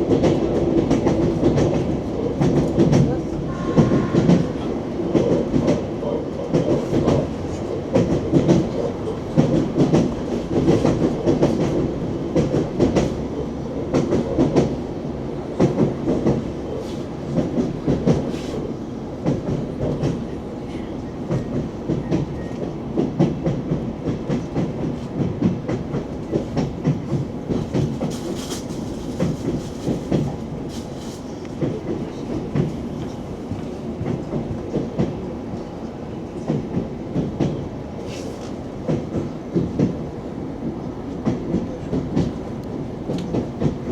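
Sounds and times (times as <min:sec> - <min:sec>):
train rumble: 0:00.0 - 0:43.9
train wheels clattering over rails: 0:00.0 - 0:43.9.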